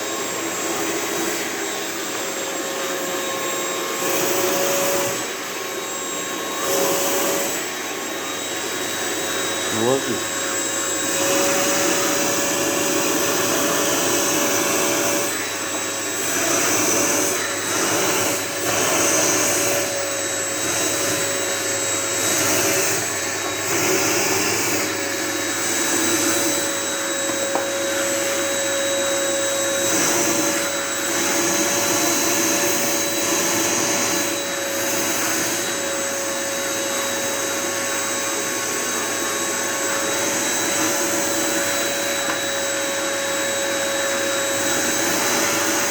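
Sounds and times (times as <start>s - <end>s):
vacuum cleaner running: 0.0s - 45.9s.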